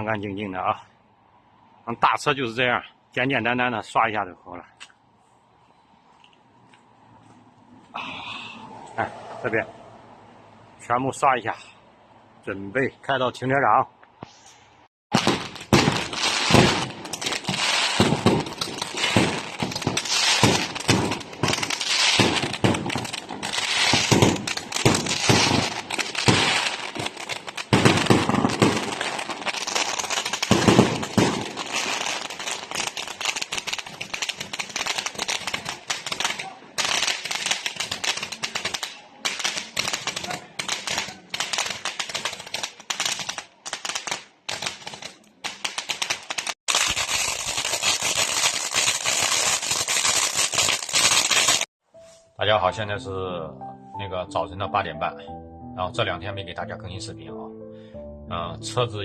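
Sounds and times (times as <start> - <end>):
firecrackers crackling: 15.1 - 51.7
loud firecracker bangs: 15.1 - 51.7.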